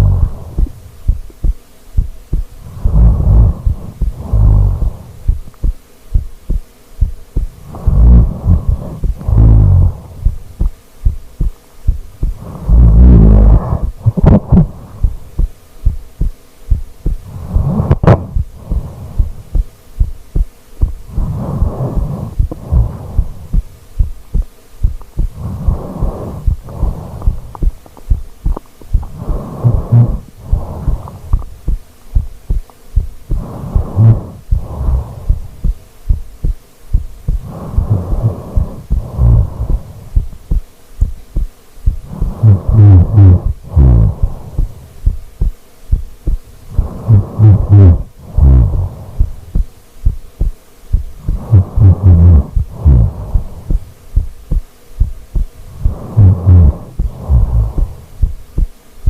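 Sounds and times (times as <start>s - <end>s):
person snoring: 0.0s - 0.9s, 2.6s - 5.5s, 7.4s - 10.7s, 12.2s - 15.5s, 17.2s - 19.6s, 21.1s - 24.1s, 25.2s - 27.8s, 28.4s - 32.6s, 33.3s - 35.8s, 36.9s - 40.3s, 41.9s - 44.9s, 46.7s - 49.6s, 51.2s - 53.9s, 55.6s - 58.3s.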